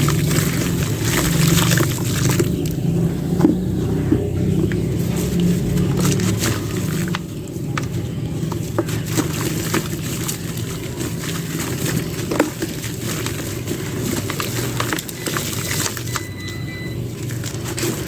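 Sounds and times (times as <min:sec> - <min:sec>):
steady low rumble: 0:00.0 - 0:12.3
dry clay crackling and crunching: 0:00.0 - 0:18.0.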